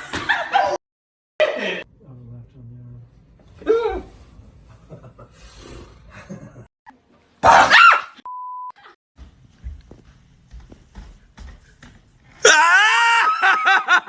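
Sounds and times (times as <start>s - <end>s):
censor bleep: 8.3s - 8.8s.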